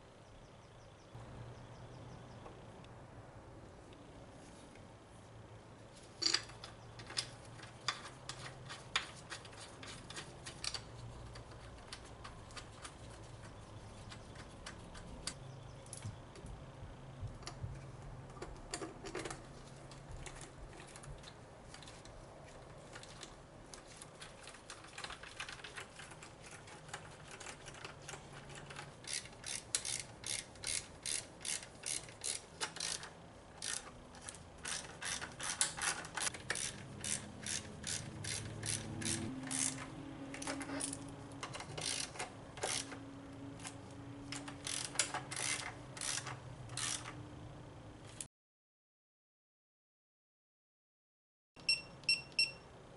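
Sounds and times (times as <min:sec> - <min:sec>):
ratchet wrench clicking: 0:29.0 - 0:43.0, 0:43.6 - 0:47.2.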